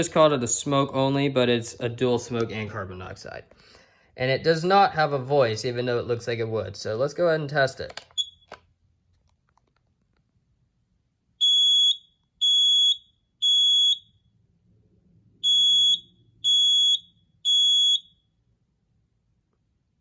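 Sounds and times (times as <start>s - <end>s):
smoke alarm beeping: 8.1s - 8.5s, 11.4s - 14.2s, 15.4s - 18.3s.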